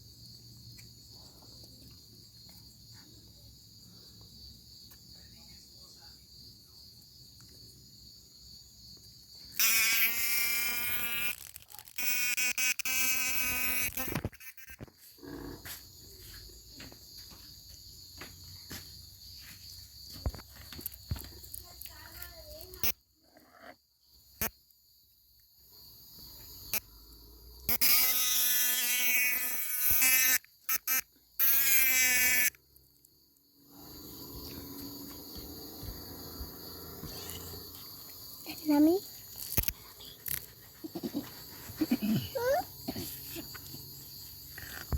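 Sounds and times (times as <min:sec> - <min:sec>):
distant insect chorus: 0:00.0 - 0:44.9
cicada buzzing call: 0:09.5 - 0:15.0, 0:27.7 - 0:32.6, 0:33.5 - 0:44.9.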